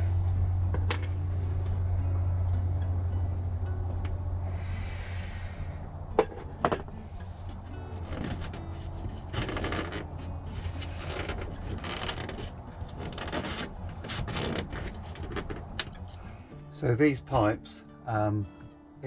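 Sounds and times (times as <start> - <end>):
steady low hum: 0.0 - 17.0
scraping and rubbing handling noises: 6.2 - 16.3.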